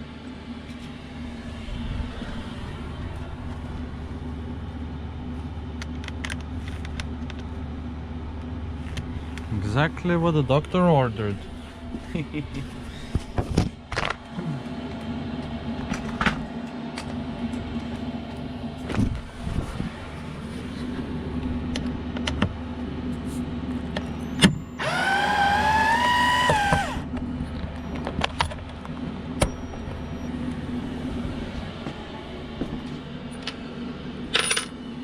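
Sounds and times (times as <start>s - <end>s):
steady low hum: 0.0s - 35.0s
small electric motor whirring: 24.8s - 27.1s.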